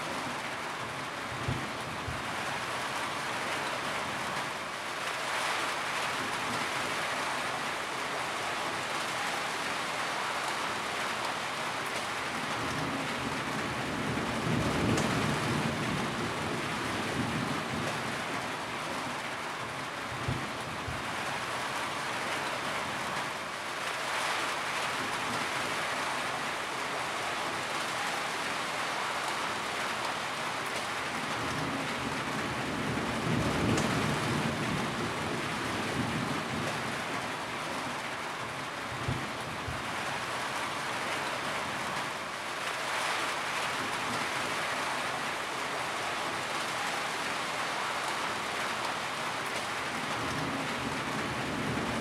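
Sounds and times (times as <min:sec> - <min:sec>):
heavy rain falling: 0:00.0 - 0:52.0
low rumble of thunder: 0:12.5 - 0:18.5, 0:31.3 - 0:37.2.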